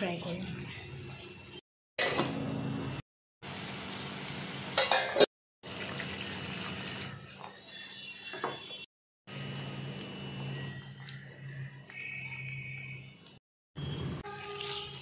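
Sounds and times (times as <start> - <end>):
water hissing in hot frying pan: 3.4 - 4.8.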